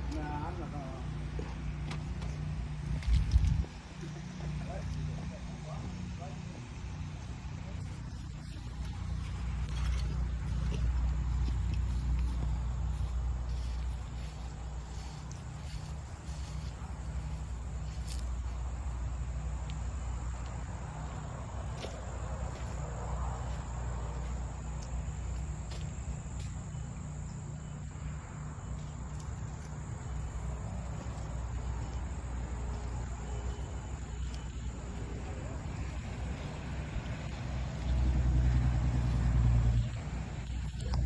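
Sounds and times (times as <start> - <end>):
insects chorus: 0.0 - 1.2, 3.0 - 41.0
wind rumble on microphone: 2.8 - 3.8, 33.9 - 41.0.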